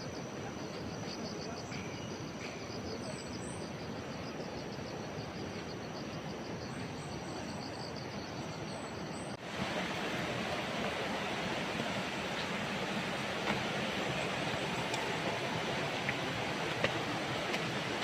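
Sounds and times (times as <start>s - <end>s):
insects trilling: 0.0s - 9.4s
steady rushing noise: 9.4s - 18.0s.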